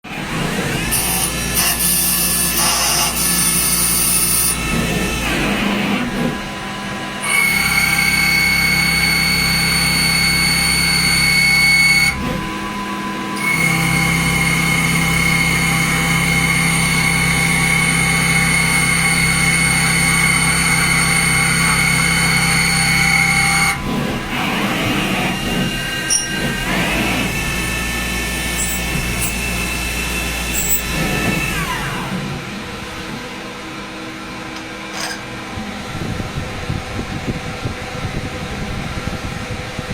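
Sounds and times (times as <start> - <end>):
milling machine cutting metal: 0.0 - 36.0.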